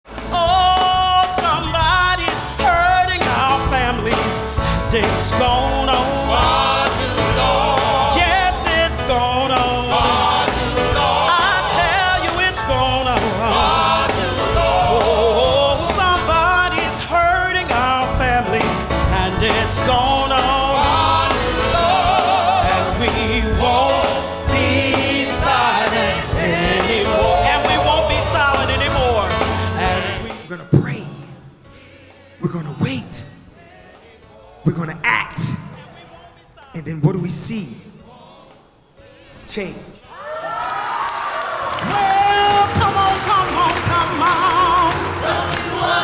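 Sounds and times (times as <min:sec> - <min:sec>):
instrumental accompaniment: 0:00.1 - 0:32.4, 0:42.0 - 0:46.0
gospel singing: 0:00.1 - 0:46.0.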